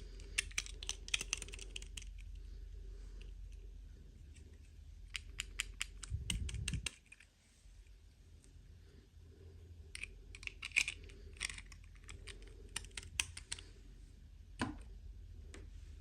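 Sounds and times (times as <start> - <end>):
plastic toy pieces clicking: 0.2 - 2.2, 5.1 - 7.2, 10.0 - 13.6.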